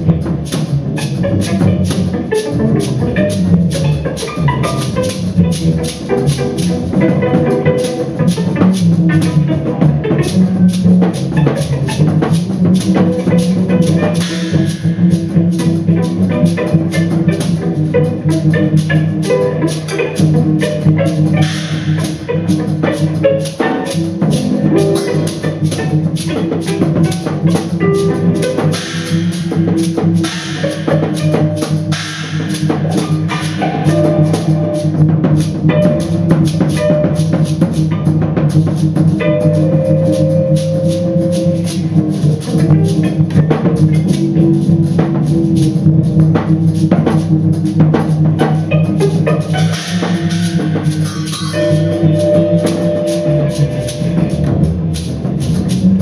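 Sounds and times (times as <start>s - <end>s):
drum kit played rapidly: 0.0s - 56.0s
long held higher notes: 39.2s - 42.1s, 48.7s - 54.9s.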